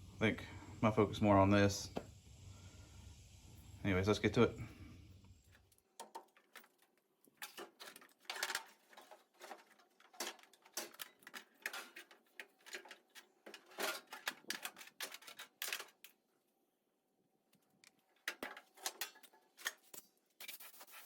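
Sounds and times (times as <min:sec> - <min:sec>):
hand tools and metal parts clanking: 0:06.0 - 0:16.2, 0:18.1 - 0:20.1.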